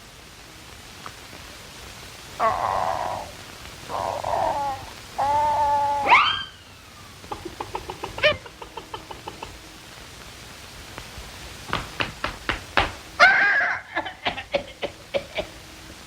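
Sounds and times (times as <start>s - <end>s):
sharp knocks and clicks: 11.7s - 13.0s.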